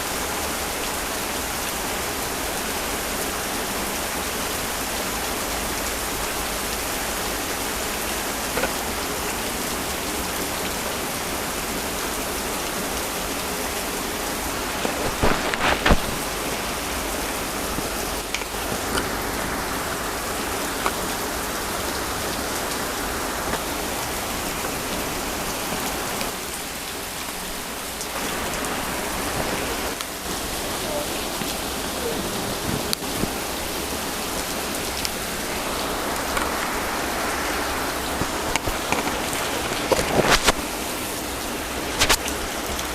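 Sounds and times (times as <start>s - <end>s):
heavy rain falling: 0.0s - 42.9s.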